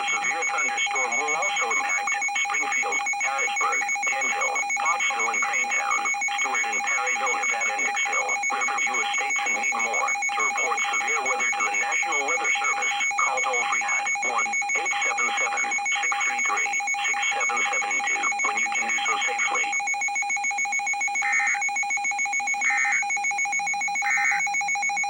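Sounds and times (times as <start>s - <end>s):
digital data tone bursts: 0.0s - 19.9s.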